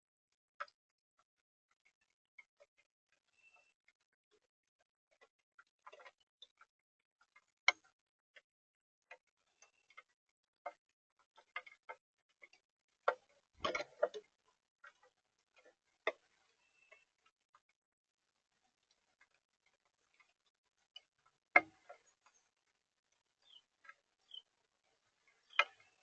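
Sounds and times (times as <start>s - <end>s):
sharp ticks and taps: 25.4s - 26.0s.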